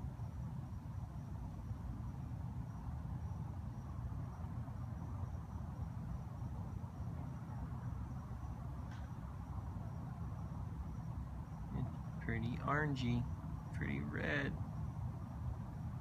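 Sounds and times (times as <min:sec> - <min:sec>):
crickets chirping: 0:00.0 - 0:16.0
low steady rumble: 0:00.0 - 0:16.0.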